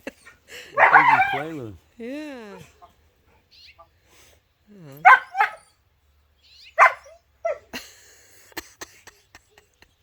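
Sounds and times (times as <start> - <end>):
dog barking in short yelps: 0.8 - 1.4, 6.8 - 7.6.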